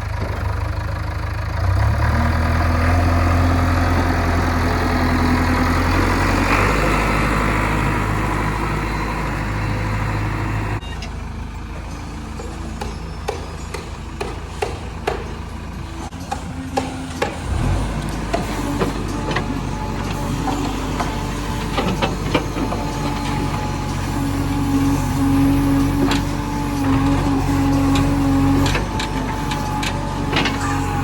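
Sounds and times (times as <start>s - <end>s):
diesel engine running: 0.0s - 31.0s
sharp metal knocks and clanks: 12.3s - 24.0s.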